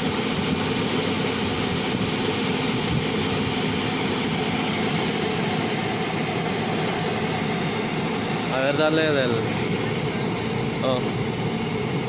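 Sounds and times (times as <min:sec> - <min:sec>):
air blower rushing: 0:00.0 - 0:12.0.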